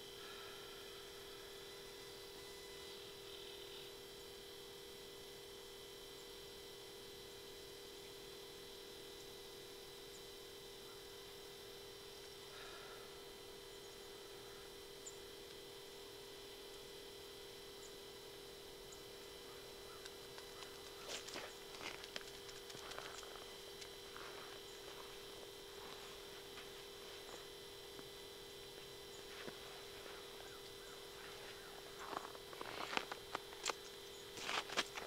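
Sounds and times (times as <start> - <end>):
faint electronic hum: 0.0 - 35.0
crunches on snowy ice: 19.9 - 27.5, 28.8 - 30.6, 31.2 - 35.0.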